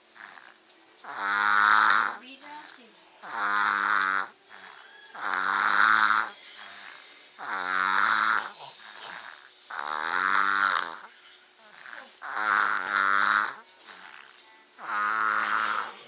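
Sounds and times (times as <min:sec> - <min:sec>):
cat snoring: 0:00.0 - 0:16.0
quiet breaths: 0:13.5 - 0:16.0.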